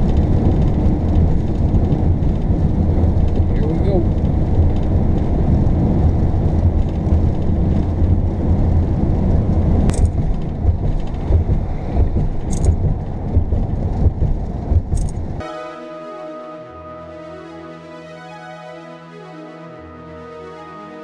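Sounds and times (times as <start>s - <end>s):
engine and tyre rumble: 0.0s - 15.4s
wind buffeting: 0.0s - 15.4s.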